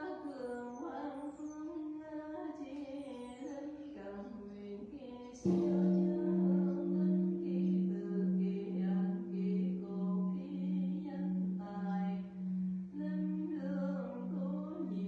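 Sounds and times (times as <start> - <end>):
person chanting: 5.3 - 15.0
temple bell ringing: 5.4 - 15.0.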